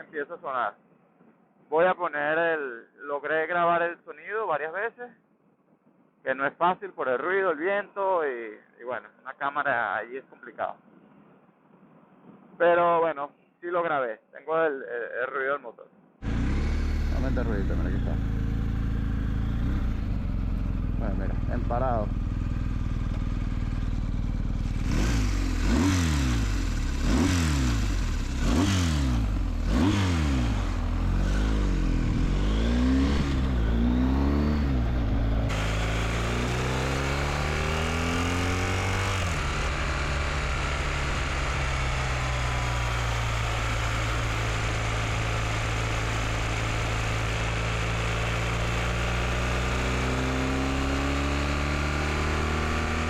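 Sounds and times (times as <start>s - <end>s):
motorcycle engine revving: 16.2s - 53.0s.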